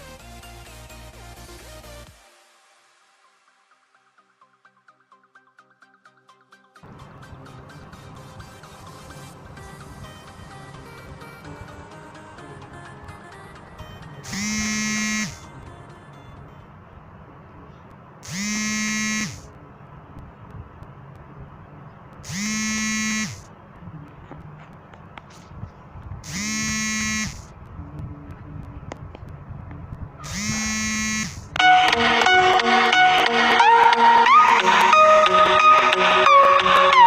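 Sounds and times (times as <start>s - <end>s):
smartphone alarm buzzing: 13.8s - 16.7s, 18.2s - 19.5s, 22.2s - 23.5s, 26.2s - 27.5s, 30.3s - 37.0s.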